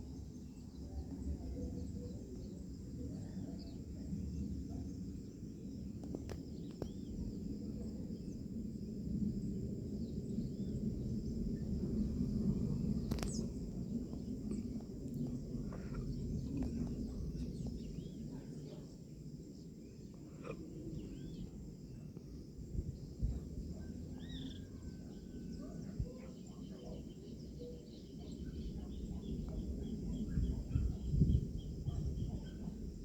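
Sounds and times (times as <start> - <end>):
distant jet engines rumbling: 0.0 - 33.0
birds chirping: 10.0 - 22.2, 23.0 - 33.0.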